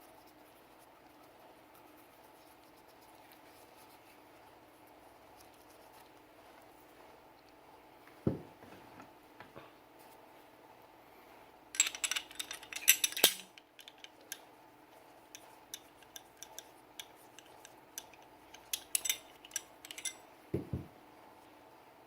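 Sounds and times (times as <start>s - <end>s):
dull knock: 8.3s - 8.5s, 20.6s - 20.9s
pistol parts clicking metallically: 11.8s - 14.4s, 15.4s - 20.2s.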